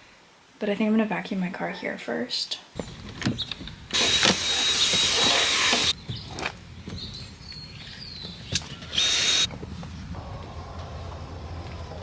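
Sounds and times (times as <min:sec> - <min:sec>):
vacuum cleaner whining: 0:04.0 - 0:06.0, 0:10.1 - 0:12.0.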